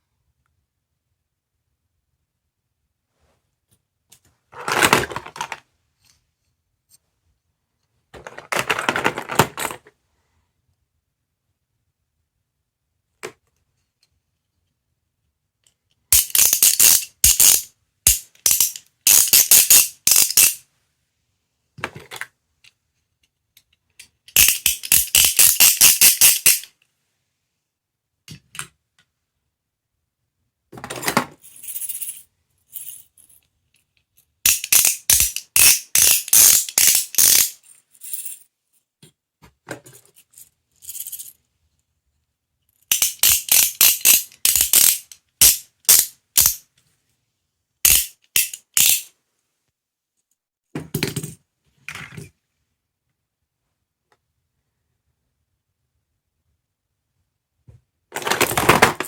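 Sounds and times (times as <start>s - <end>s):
toy jingling rattle: 16.2s - 20.6s, 24.4s - 26.7s, 34.5s - 37.6s, 42.9s - 46.6s.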